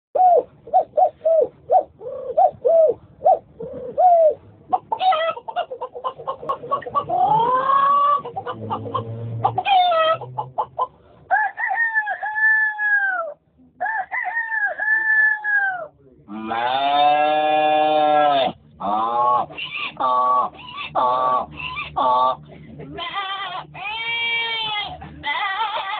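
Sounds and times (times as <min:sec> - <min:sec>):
person imitating chickens: 0:00.2 - 0:10.5, 0:11.4 - 0:25.9.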